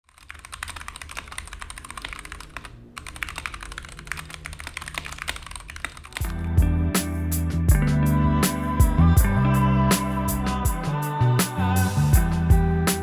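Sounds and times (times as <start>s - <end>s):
fast mechanical keyboard typing: 0.0s - 6.3s.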